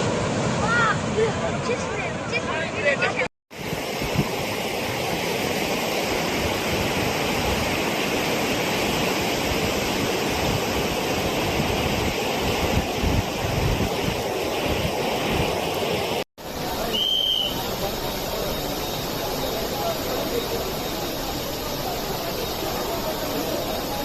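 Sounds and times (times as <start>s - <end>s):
floodwater rushing: 0.0s - 24.0s
wind buffeting microphone: 9.2s - 15.7s.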